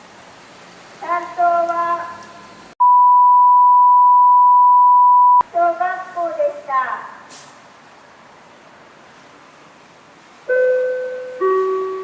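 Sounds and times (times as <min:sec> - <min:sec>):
child announcing over loudspeaker: 0:01.0 - 0:02.2, 0:05.4 - 0:07.3
high-pitched censor bleep: 0:02.8 - 0:05.4.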